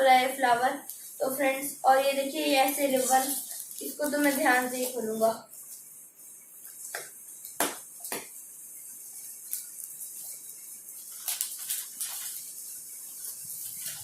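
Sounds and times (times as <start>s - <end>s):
wrapping paper rustling: 2.3s - 5.9s, 8.9s - 14.0s
gift wrap crackling: 2.4s - 5.8s, 9.2s - 14.0s.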